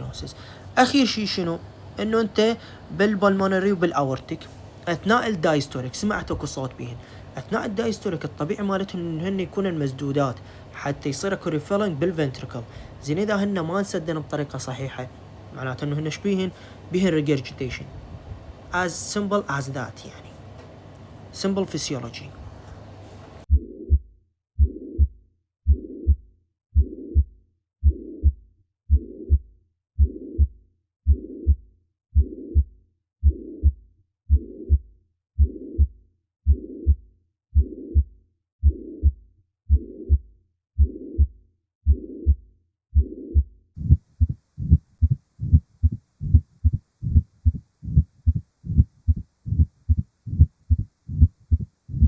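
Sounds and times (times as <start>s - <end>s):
rushing heart murmur: 23.5s - 24.0s, 24.6s - 26.2s, 26.8s - 31.6s, 32.2s - 37.0s, 37.6s - 42.4s, 43.0s - 52.0s
low heart sounds: 23.5s - 52.0s.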